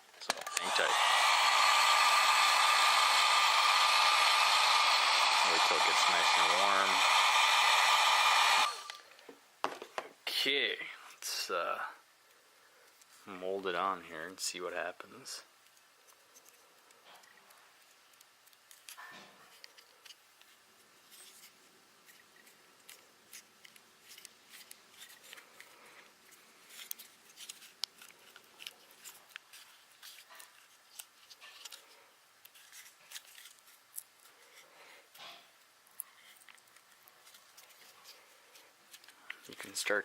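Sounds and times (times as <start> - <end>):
grip tape handling clicks and crackles: 0.2 - 0.9, 15.6 - 20.6, 21.2 - 34.3, 35.1 - 40.0.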